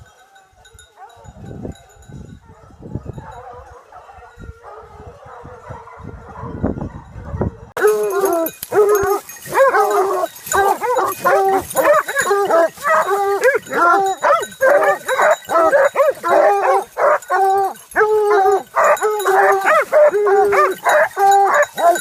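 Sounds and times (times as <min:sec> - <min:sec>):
animal whining cries: 0:07.8 - 0:22.0.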